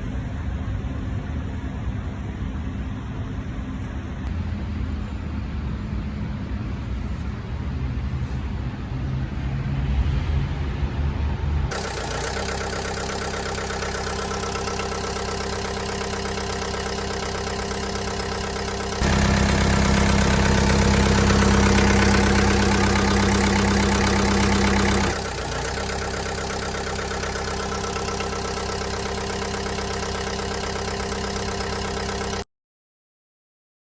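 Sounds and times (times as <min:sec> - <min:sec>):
diesel engine idling and revving: 0:04.0 - 0:32.4.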